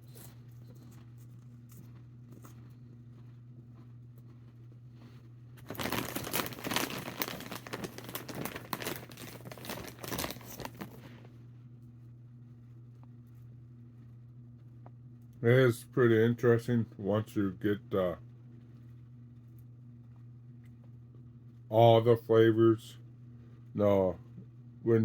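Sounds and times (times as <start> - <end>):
snack bag crinkling: 0.0 - 4.4, 5.0 - 11.3
steady low hum: 0.0 - 25.0.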